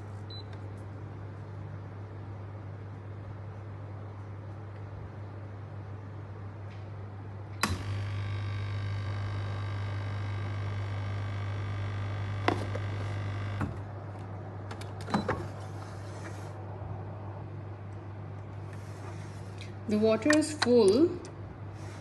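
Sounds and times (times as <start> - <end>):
espresso machine motor whining: 7.6 - 13.8.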